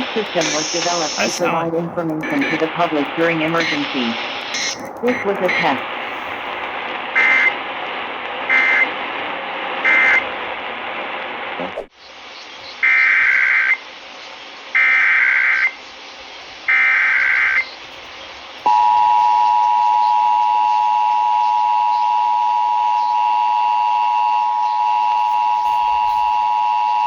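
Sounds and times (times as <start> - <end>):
two-tone alert signal: 2.2 - 2.8, 4.6 - 5.8.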